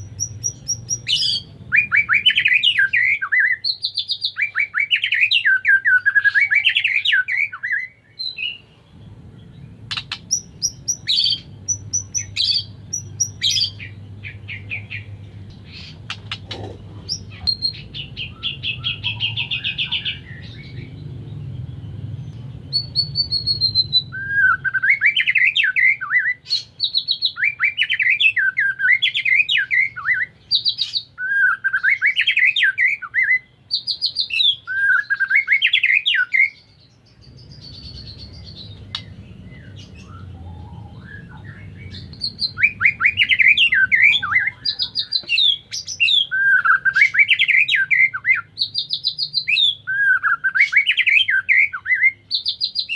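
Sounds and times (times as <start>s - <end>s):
bird singing whistled phrases: 0.0s - 8.6s, 17.1s - 20.9s, 22.7s - 36.7s, 37.4s - 52.9s
bird trill: 0.0s - 52.9s.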